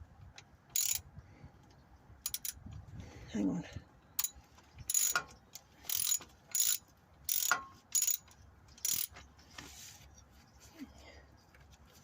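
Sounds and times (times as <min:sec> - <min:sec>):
ratchet wrench clicking: 0:00.7 - 0:01.0, 0:02.2 - 0:02.6, 0:04.2 - 0:09.2.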